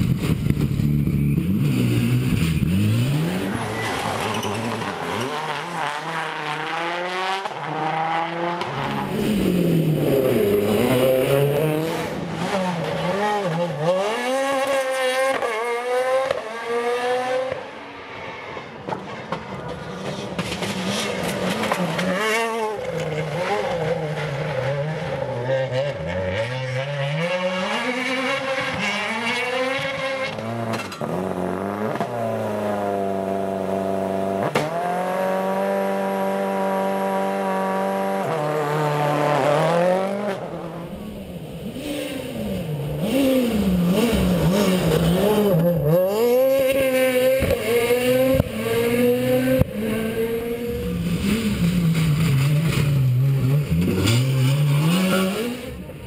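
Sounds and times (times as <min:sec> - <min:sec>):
rally car engine revving: 0:00.0 - 0:56.0.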